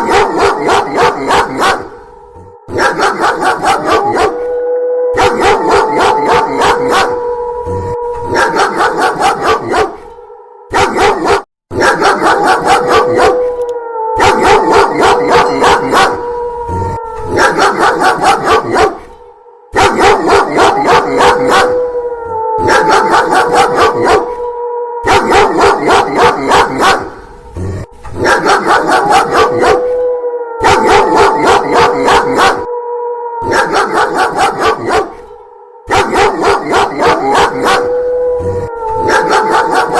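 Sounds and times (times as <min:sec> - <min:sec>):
dog barking: 0:00.0 - 0:02.0, 0:02.7 - 0:04.5, 0:05.1 - 0:07.2, 0:08.3 - 0:10.1, 0:10.7 - 0:13.5, 0:14.2 - 0:16.2, 0:17.3 - 0:21.8, 0:22.6 - 0:24.4, 0:25.0 - 0:27.2, 0:28.1 - 0:30.0, 0:30.6 - 0:32.7, 0:33.4 - 0:35.3, 0:35.9 - 0:38.0, 0:39.0 - 0:39.9
wolf howl: 0:00.0 - 0:39.9.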